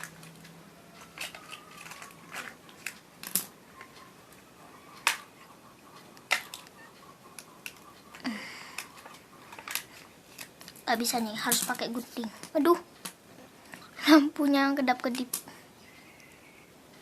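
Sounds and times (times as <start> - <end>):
plastic wrapping crinkling and snapping: 0.0 - 3.5.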